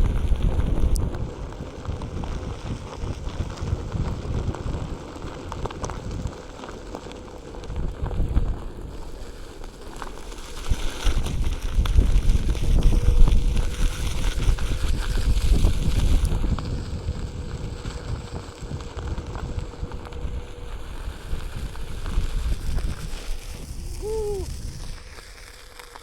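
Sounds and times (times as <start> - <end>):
wind buffeting microphone: 0.0 - 25.4
electric board wheel rolling: 0.0 - 26.0
small ticks: 0.0 - 26.0.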